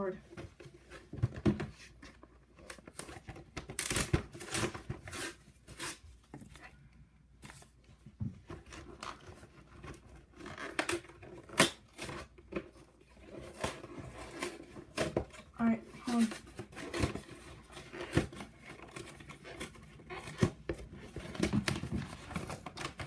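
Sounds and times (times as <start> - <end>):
cardboard tearing and crinkling: 2.5 - 6.7, 8.6 - 23.0.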